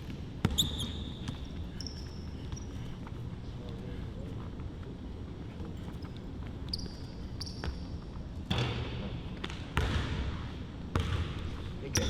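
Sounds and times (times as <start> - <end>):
sneaker squeaks: 0.0 - 3.3, 5.6 - 10.0, 11.0 - 12.0
basketball bouncing on hardwood: 9.4 - 10.2, 10.9 - 11.4.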